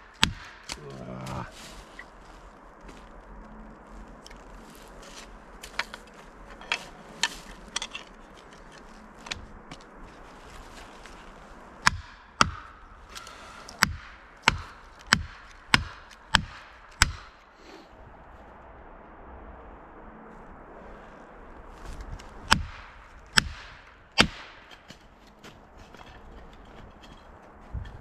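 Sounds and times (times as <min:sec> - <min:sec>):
axe chopping wood: 0:00.0 - 0:01.4, 0:11.8 - 0:12.8, 0:13.7 - 0:17.4, 0:22.5 - 0:25.0.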